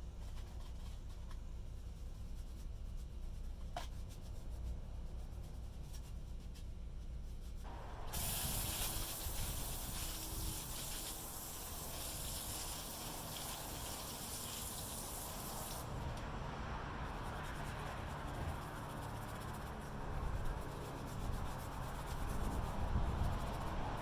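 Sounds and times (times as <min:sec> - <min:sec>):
liquid spraying hiss: 0:08.0 - 0:15.9
running liquid rush: 0:08.0 - 0:15.9.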